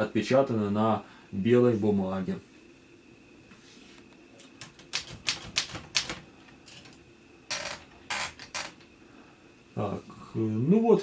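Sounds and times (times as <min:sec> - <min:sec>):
typewriter keys clacking: 0:04.6 - 0:08.5
scratchy mechanical noises: 0:06.7 - 0:08.8.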